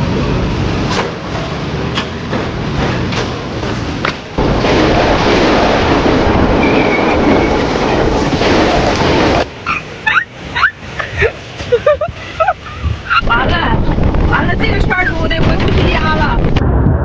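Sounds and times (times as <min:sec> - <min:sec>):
wind buffeting microphone: 0:12.8 - 0:17.0.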